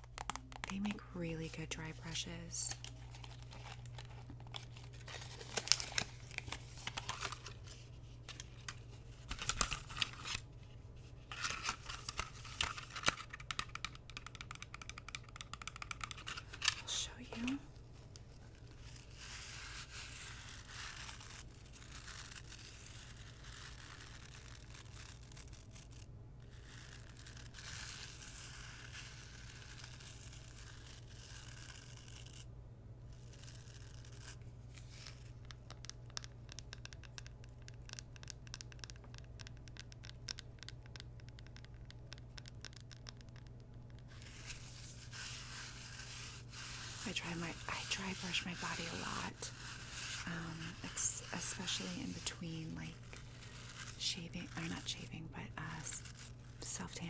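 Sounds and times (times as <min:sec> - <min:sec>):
brush bristles scratching: 0:44.1 - 0:57.0.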